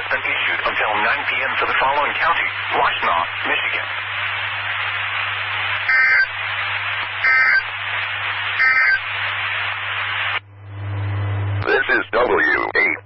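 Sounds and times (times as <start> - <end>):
radio hiss: 0.0 - 10.4, 11.6 - 13.0
two-tone data burst warble: 5.8 - 6.4, 7.2 - 7.7, 8.6 - 9.1.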